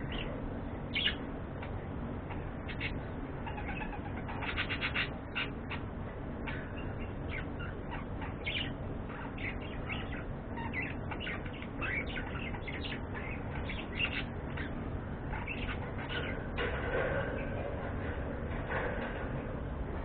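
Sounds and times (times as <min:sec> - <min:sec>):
budgerigars chirping: 0:00.0 - 0:17.5.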